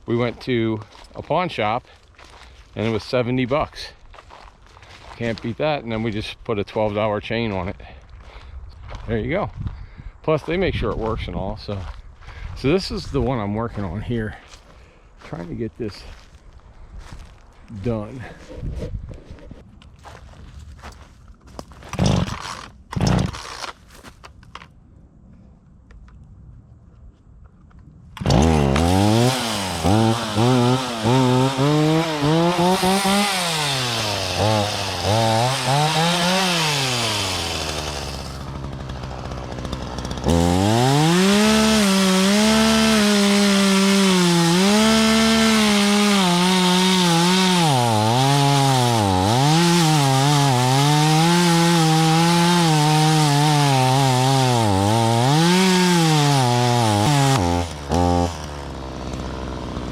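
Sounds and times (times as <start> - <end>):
chainsaw cutting tree: 21.8 - 23.8, 28.2 - 59.9.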